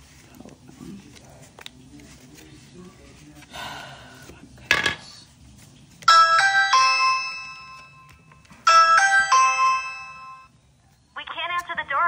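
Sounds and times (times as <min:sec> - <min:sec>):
doorbell electronic chime: 0:06.1 - 0:08.1, 0:08.7 - 0:10.5.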